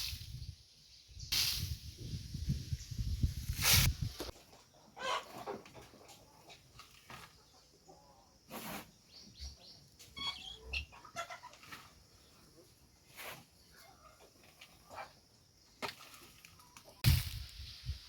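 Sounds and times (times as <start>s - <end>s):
young chickens chirping and clucking: 2.7s - 8.3s, 9.2s - 12.7s
brief scraping noises: 3.5s - 4.3s, 8.5s - 9.0s.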